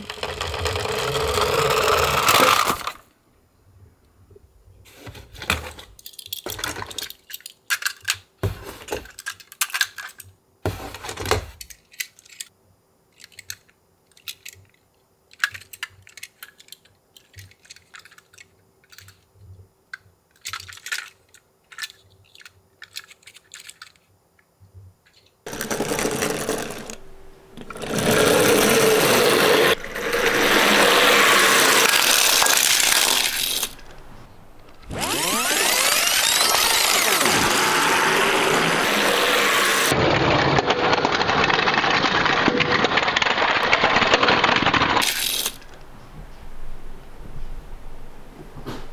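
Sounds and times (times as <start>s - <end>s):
toy cars clicking and clacking: 0.0s - 3.0s, 5.4s - 10.4s, 11.0s - 12.5s, 13.1s - 45.9s
loud continuous rattling: 25.5s - 39.9s.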